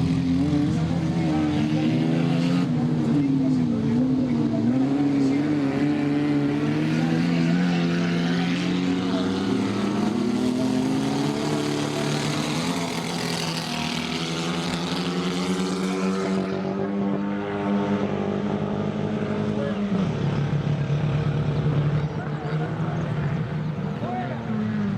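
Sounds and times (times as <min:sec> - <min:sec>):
racing car engines droning: 0:00.0 - 0:24.9.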